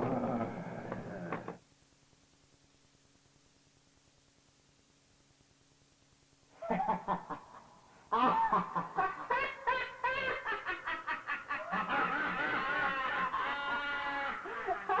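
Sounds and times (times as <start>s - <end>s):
faint hum: 0.0s - 15.0s
cackling laughter: 6.6s - 15.0s.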